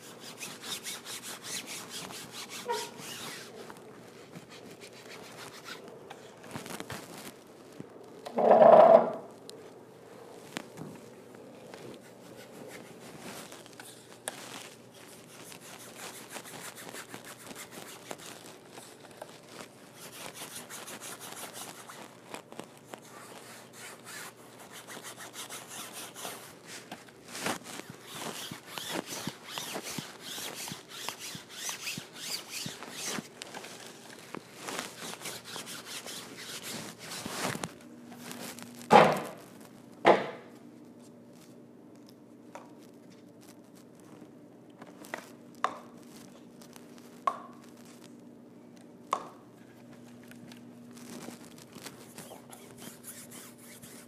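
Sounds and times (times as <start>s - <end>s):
paintbrush scrubbing on backdrop: 0.0s - 5.9s, 11.7s - 38.7s, 51.0s - 54.0s.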